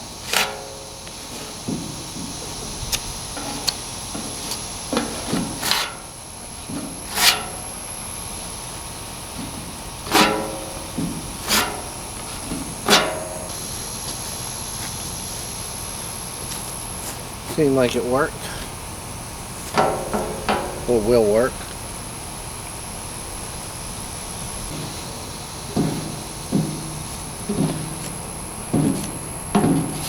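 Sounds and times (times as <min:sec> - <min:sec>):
metallic knocks and clanks: 0:19.7 - 0:21.4.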